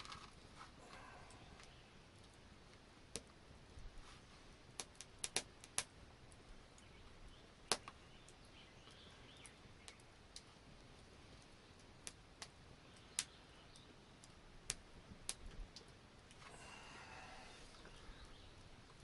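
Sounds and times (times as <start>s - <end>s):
small sharp clicks and taps: 1.6s - 3.4s, 4.8s - 5.9s, 7.7s - 10.5s, 11.8s - 16.4s.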